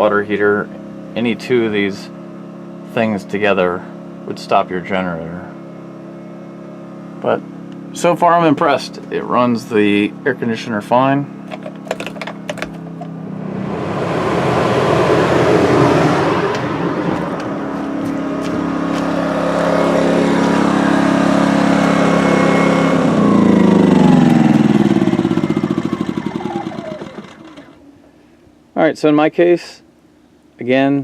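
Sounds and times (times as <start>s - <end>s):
vehicle passing by: 12.8s - 27.8s.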